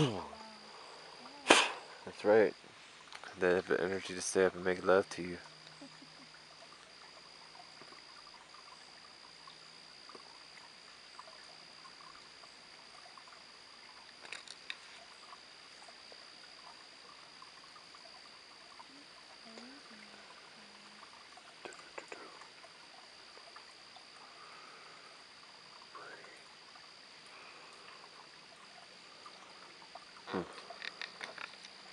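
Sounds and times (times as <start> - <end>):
short low calls: 0.0 - 2.2
high-pitched insect drone: 0.0 - 31.9.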